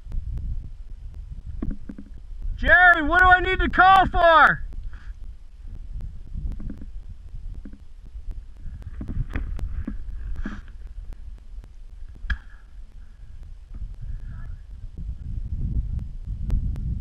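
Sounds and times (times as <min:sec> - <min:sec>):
wind rumbling on microphone: 0:00.0 - 0:17.0
microphone handling clicks: 0:01.4 - 0:02.6, 0:04.7 - 0:13.0.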